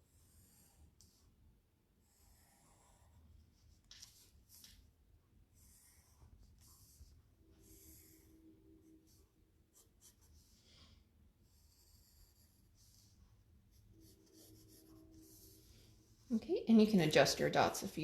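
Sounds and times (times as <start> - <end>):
pencil scratching on paper: 2.1 - 4.6, 5.5 - 16.3.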